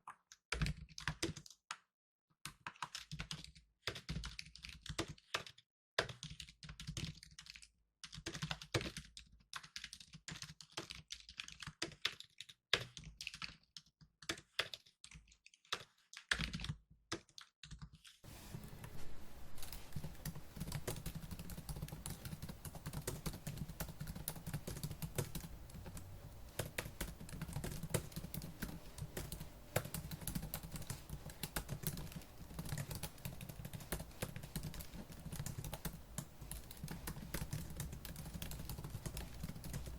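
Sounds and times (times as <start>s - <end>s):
fast typing on laptop keyboard: 0.0s - 18.2s, 19.6s - 39.9s
faint background hiss and hum: 18.3s - 39.9s.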